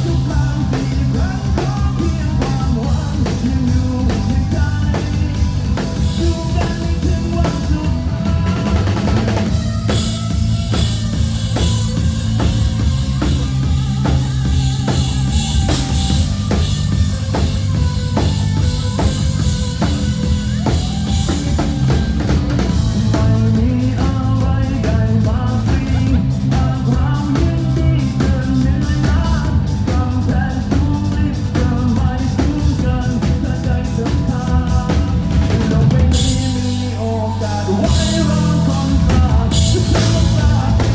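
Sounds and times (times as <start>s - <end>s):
drum kit beat: 0.0s - 40.9s
rock band playing live: 0.0s - 40.9s.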